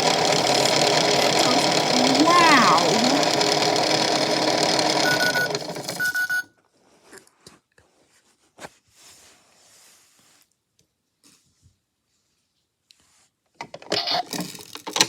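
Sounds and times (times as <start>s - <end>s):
toy washing machine whirring: 0.0s - 6.4s
short electronic beeps: 5.0s - 6.4s.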